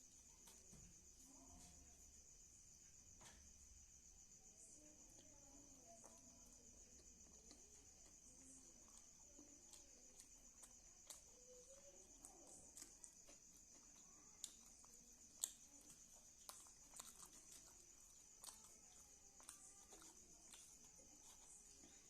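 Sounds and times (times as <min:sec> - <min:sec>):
chewing and food handling clicks: 0:04.6 - 0:22.0.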